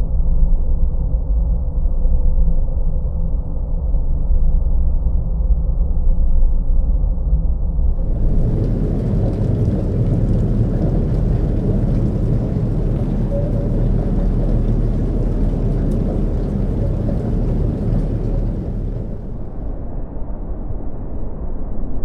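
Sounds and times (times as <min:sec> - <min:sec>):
faint crackling hiss: 0:08.0 - 0:19.7
low rumble drone: 0:08.0 - 0:20.2.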